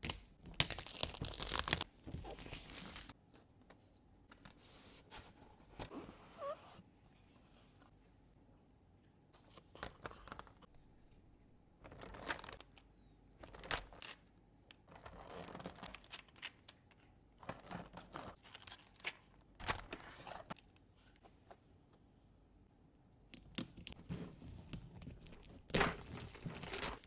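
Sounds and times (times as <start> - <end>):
wrapping crinkling and tearing: 0.0 - 3.2, 23.8 - 27.0.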